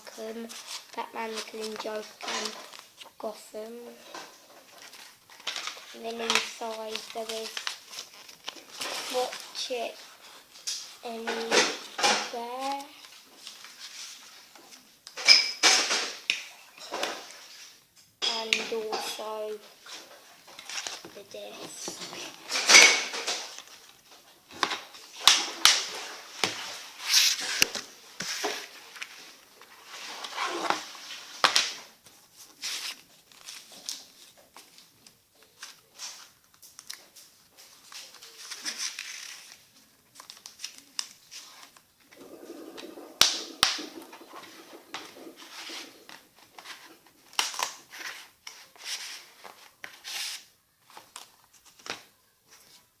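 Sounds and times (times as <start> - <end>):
rustling: 4.1 - 15.0, 18.4 - 52.9
plastic packaging crinkling: 4.7 - 9.6, 32.6 - 52.0.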